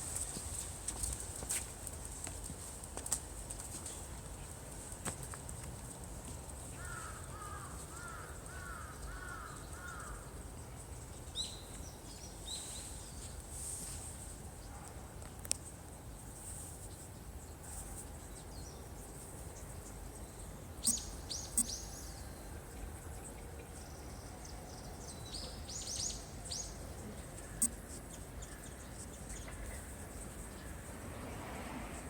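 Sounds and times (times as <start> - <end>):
small birds chirping: 19.6 - 22.3, 23.7 - 30.9
sharp ticks: 20.8 - 21.8.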